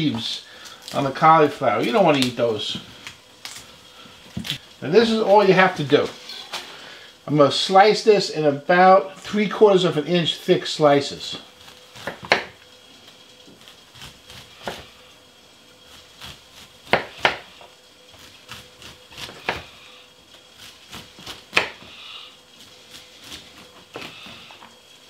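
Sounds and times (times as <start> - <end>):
knife slicing cauliflower: 13.6 - 15.0, 15.8 - 19.8, 20.5 - 22.0.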